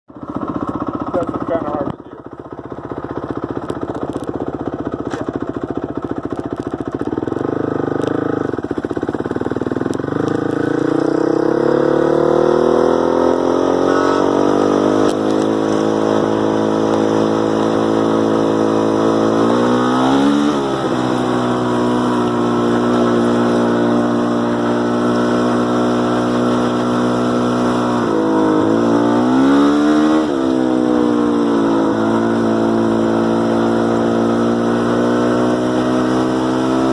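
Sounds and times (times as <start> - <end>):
motorcycle engine idling: 0.1 - 19.8.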